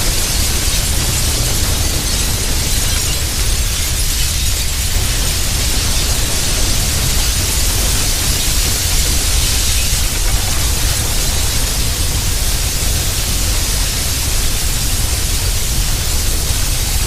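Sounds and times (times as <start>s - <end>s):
rushing noise with deep rumble: 0.0s - 17.0s.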